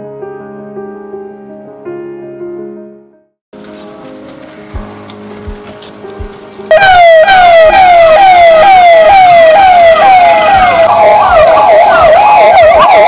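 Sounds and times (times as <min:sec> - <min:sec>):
emergency vehicle siren: 0:06.7 - 0:13.0.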